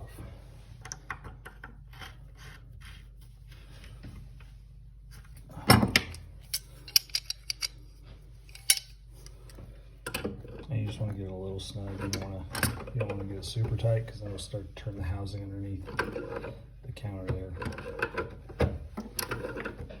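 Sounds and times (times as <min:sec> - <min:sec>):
small metal clicks and scrapes: 0:06.5 - 0:07.8.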